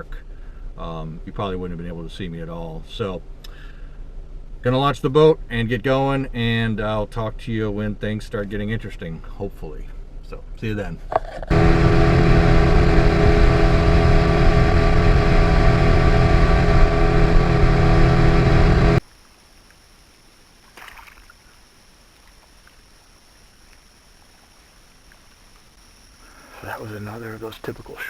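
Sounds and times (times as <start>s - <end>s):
outboard motor running: 11.5s - 19.0s.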